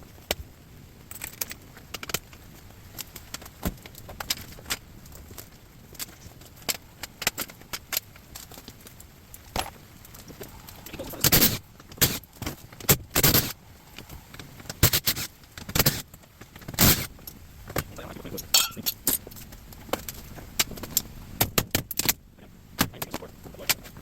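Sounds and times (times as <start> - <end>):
metal clanking and rattling: 18.3 - 19.3.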